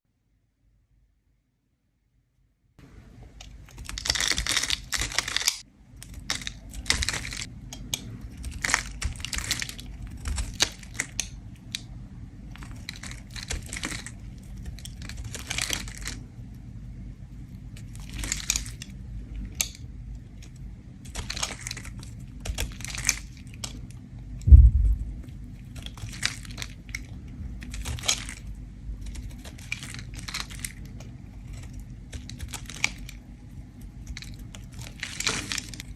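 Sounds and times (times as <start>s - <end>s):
steady low hum: 2.8s - 35.9s
low thump: 24.5s - 25.3s.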